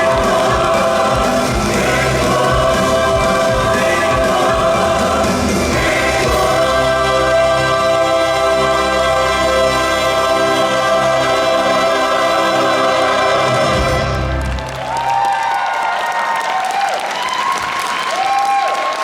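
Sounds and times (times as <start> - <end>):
ensemble singing with orchestra: 0.0 - 14.7.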